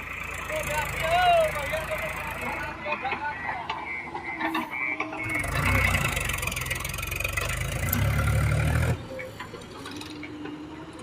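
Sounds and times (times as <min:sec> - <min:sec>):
heavy diesel engine running: 0:00.0 - 0:11.0.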